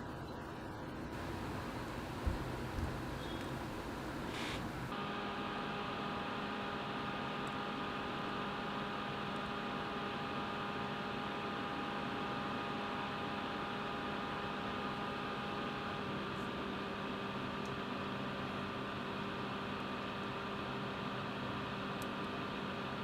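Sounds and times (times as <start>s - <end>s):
steady hum: 1.1s - 5.2s
hiss: 1.2s - 4.9s.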